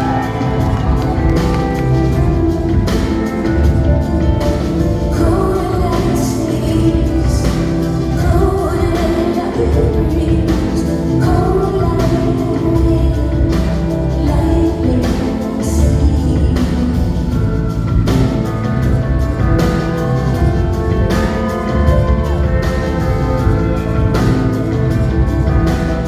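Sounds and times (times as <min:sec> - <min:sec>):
woman singing: 0:00.0 - 0:18.4
live band playing: 0:00.0 - 0:26.0.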